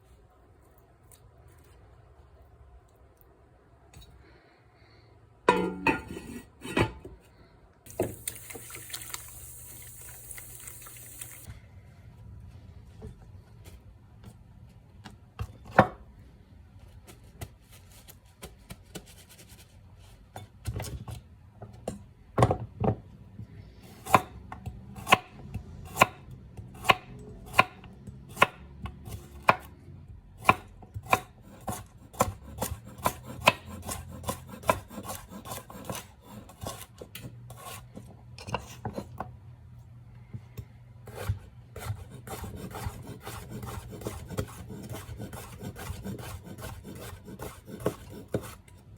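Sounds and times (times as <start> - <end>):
knife chopping on cutting board: 30.4 - 36.9, 41.1 - 48.6.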